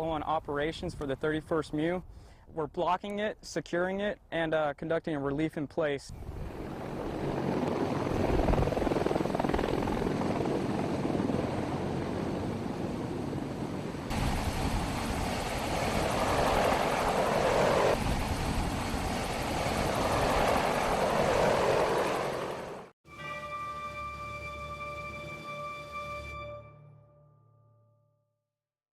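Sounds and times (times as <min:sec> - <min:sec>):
helicopter rotor and engine: 0:06.1 - 0:23.0.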